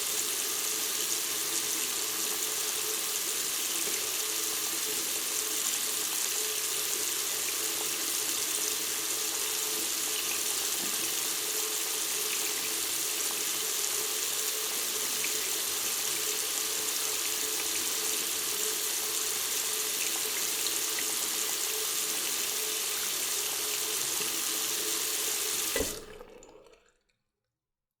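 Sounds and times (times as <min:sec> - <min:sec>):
tap running into a sink: 0:09.6 - 0:13.8, 0:24.0 - 0:26.8.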